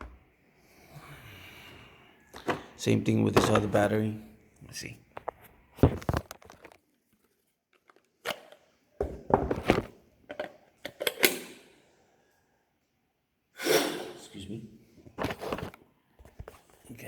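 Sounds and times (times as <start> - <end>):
plastic parts knocking and scraping: 2.4 - 3.8, 5.2 - 6.8, 7.7 - 11.3, 15.2 - 16.7.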